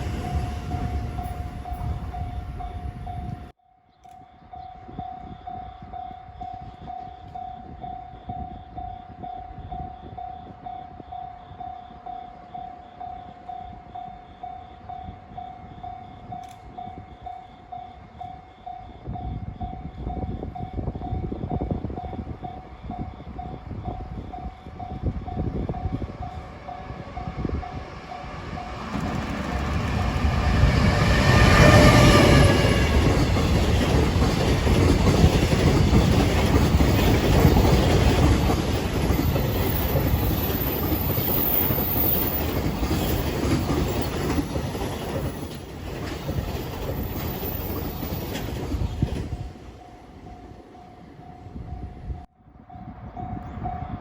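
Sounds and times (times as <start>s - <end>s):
train wheels clattering on rails: 23.4s - 49.9s.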